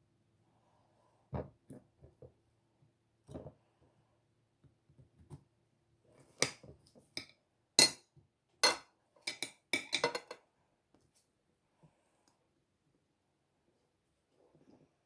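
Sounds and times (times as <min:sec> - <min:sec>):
cutlery and dishes clinking: 0:07.2 - 0:10.4.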